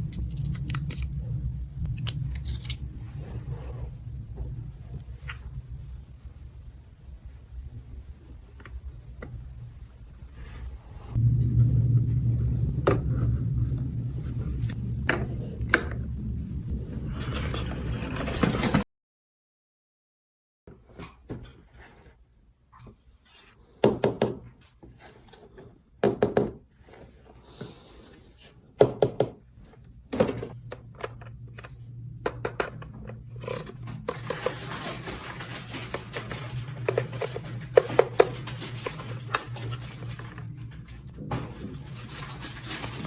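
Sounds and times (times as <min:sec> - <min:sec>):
steady low hum: 0:00.0 - 0:18.2, 0:29.4 - 0:43.0.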